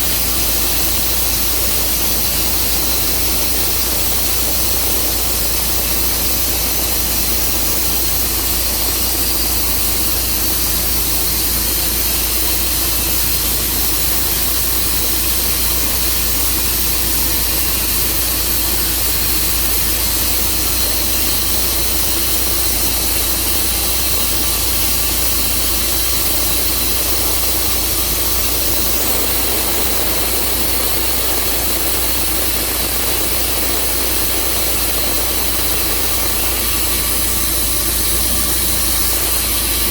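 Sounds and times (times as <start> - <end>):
saw hiss: 0.0 - 39.9
sawmill engine humming: 18.8 - 39.9.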